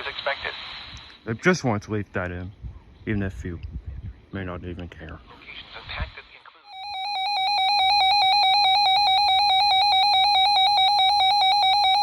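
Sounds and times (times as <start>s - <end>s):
pulsing electronic alarm beep: 6.7s - 12.0s.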